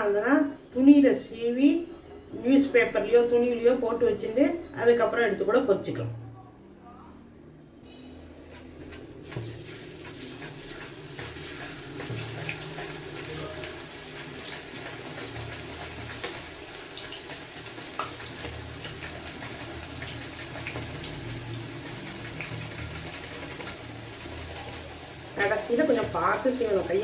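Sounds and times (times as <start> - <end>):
hot oil sizzling and popping: 8.9 - 27.0.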